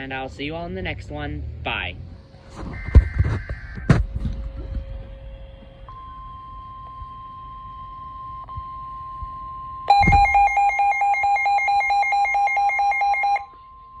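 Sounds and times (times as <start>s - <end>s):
rapid pulsing beeps: 5.8s - 14.0s
steady high alert tone: 9.9s - 13.4s.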